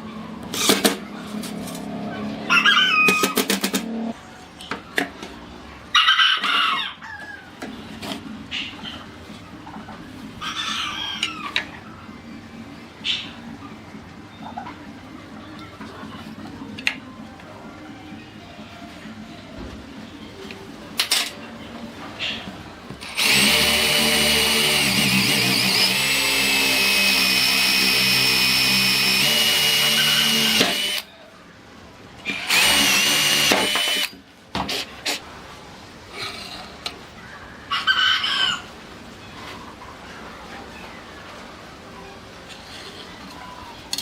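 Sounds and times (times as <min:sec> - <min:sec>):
power tool motor whining: 0:23.0 - 0:31.0, 0:32.3 - 0:34.1.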